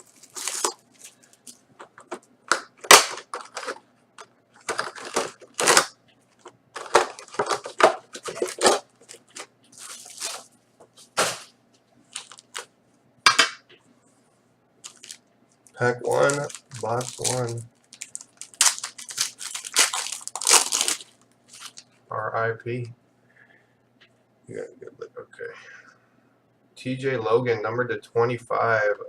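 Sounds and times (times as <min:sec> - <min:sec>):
plastic wrap and cardboard crackling: 0:00.0 - 0:01.6, 0:04.6 - 0:12.7, 0:14.8 - 0:22.0.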